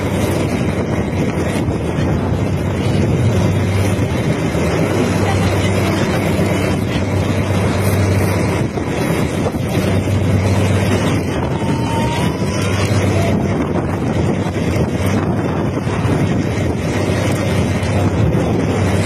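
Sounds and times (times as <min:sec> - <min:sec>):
boat motor running: 0:00.0 - 0:19.0
wind noise on microphone: 0:00.0 - 0:19.0.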